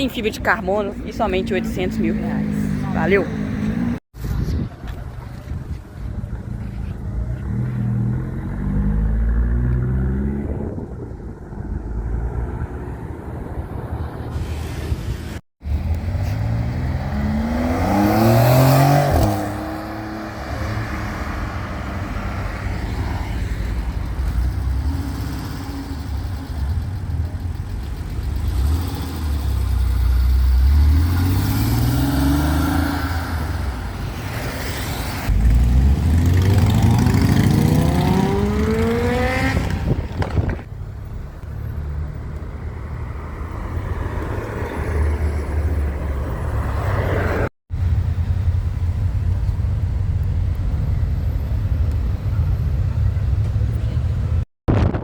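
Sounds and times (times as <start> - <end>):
road noise: 0.0 - 55.0
sports car engine accelerating: 15.8 - 23.2, 35.3 - 40.5.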